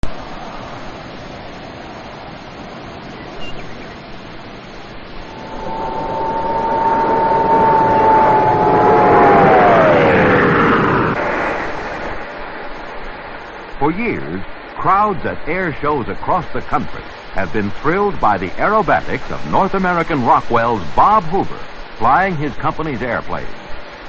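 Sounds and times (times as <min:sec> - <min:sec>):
aircraft flying past: 0:05.2 - 0:12.5
steady hiss: 0:11.7 - 0:24.0.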